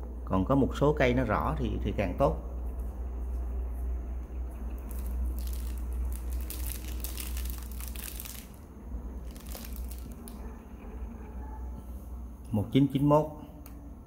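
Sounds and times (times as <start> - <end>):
steady low hum: 0.0 - 14.0
wrapping crinkling and rustling: 4.8 - 10.5.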